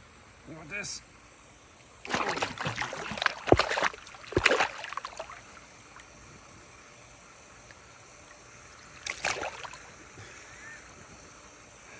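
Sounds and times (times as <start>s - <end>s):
splashing thumps in water: 2.0s - 5.6s, 9.0s - 9.9s.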